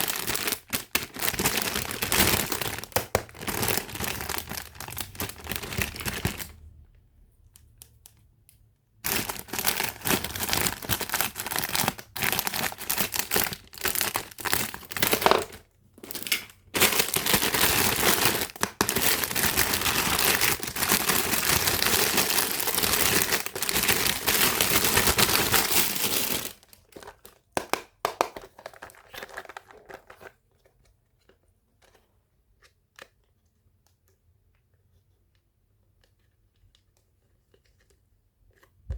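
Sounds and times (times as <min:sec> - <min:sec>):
packaging crinkling and tearing: 0:00.0 - 0:06.7, 0:09.0 - 0:32.0.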